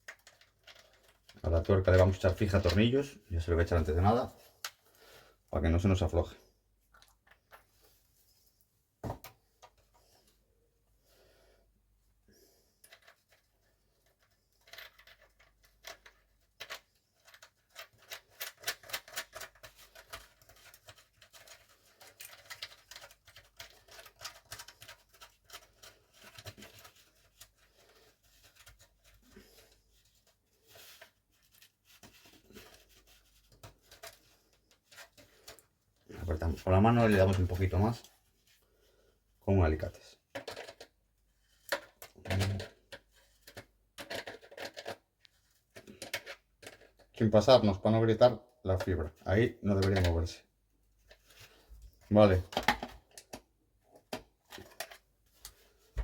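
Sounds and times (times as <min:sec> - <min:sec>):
nut being threaded by hand: 0:00.0 - 0:02.8, 0:12.8 - 0:38.5, 0:40.3 - 0:47.2.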